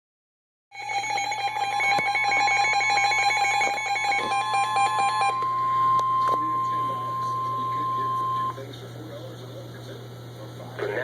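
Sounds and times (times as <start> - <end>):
rapidly alternating alarm beeps: 0.8 - 8.6.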